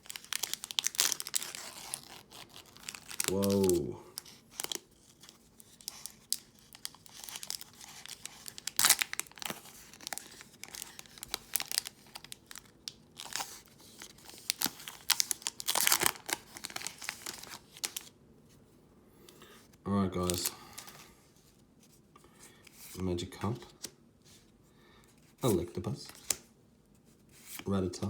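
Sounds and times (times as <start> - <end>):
foil wrapper tearing and crinkling: 0.0 - 18.1.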